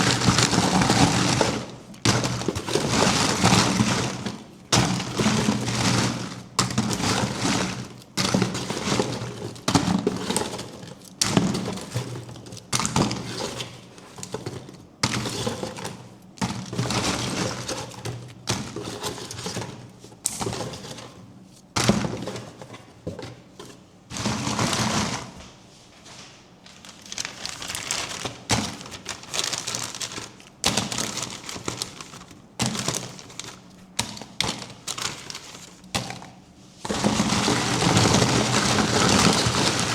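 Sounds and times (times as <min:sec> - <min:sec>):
foil and chocolate shell crackling: 0:26.6 - 0:39.9.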